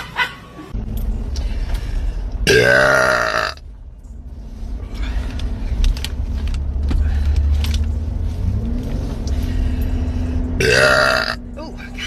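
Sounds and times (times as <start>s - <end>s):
car engine rumble: 0.0s - 12.0s
low hum: 0.6s - 12.0s
light clicks and rattles: 5.0s - 10.0s.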